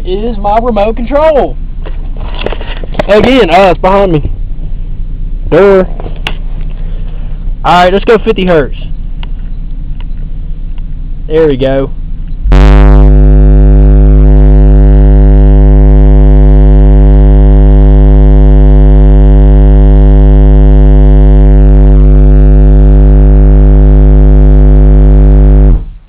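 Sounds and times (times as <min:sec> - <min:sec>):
distorted subwoofer test tone: 0:00.0 - 0:26.0.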